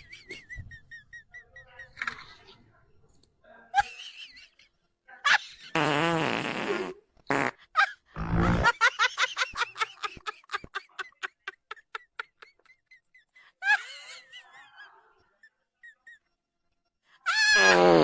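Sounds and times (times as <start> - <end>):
fart sound sputtering pops: 5.8 - 7.5, 8.2 - 8.6.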